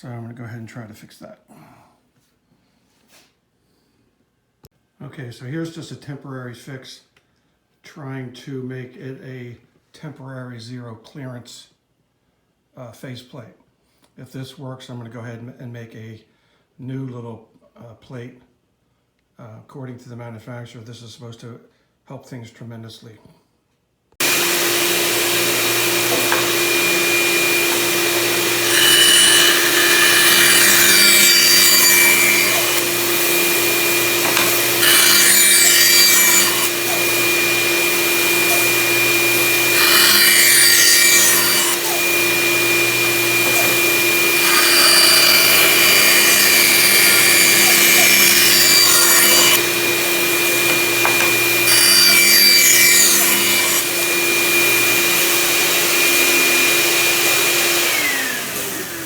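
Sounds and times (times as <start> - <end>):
bandsaw cutting wood: 24.2 - 59.0.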